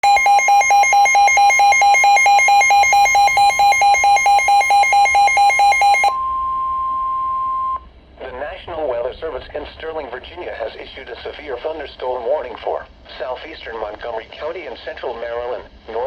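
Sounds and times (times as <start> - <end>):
rapid alert beeping: 0.0 - 6.2
steady warning alarm tone: 0.0 - 7.9.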